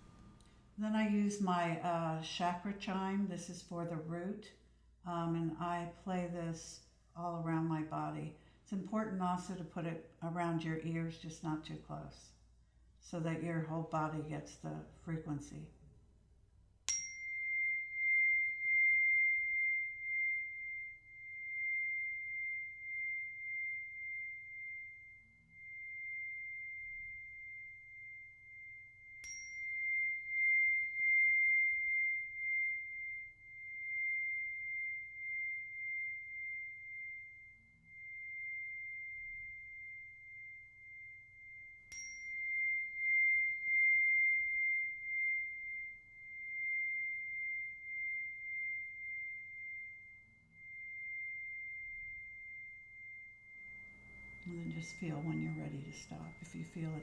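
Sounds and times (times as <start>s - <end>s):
chime ringing a high pure tone: 16.9s - 57.0s.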